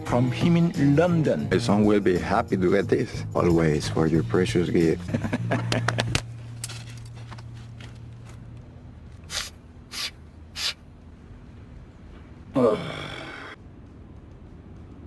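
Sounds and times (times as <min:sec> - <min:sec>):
man sniffing sharply: 0:09.3 - 0:10.8.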